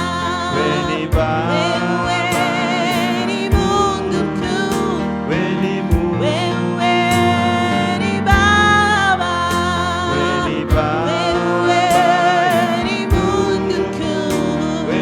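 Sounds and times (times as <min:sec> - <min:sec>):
gospel band playing: 0:00.0 - 0:15.0
person singing sliding notes: 0:00.0 - 0:15.0
low drum hits: 0:01.1 - 0:01.4, 0:03.5 - 0:03.9, 0:05.9 - 0:06.1.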